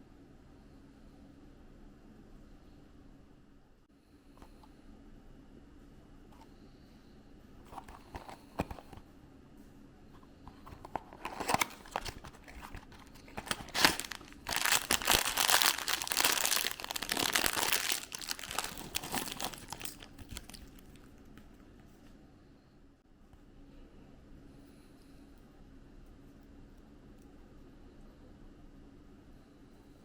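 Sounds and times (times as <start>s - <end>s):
packaging crinkling and tearing: 10.8s - 21.1s.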